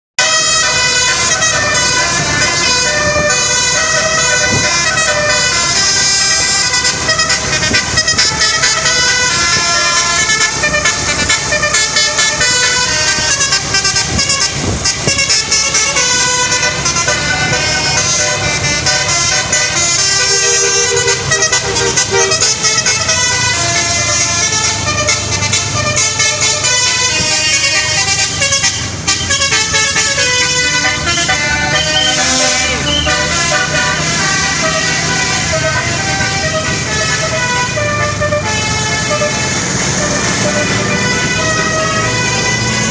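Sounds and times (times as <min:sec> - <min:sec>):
musical air horn playing a tune: 0:00.2 - 0:42.9.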